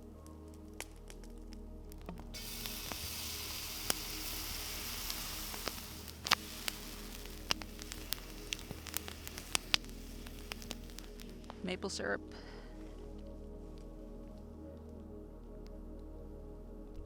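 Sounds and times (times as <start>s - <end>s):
sharp pops and crackles: 0.2s - 11.8s
food sizzling in a frying pan: 2.4s - 11.4s.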